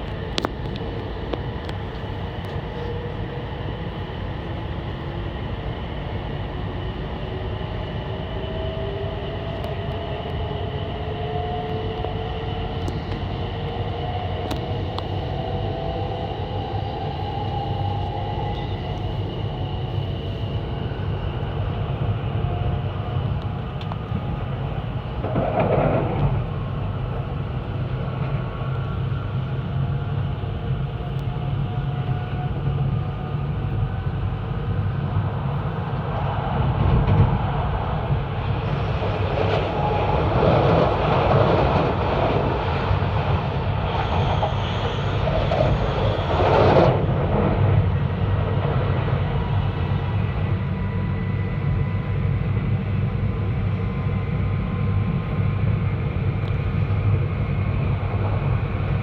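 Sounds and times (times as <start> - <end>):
train hum and rumble: 0.0 - 59.0.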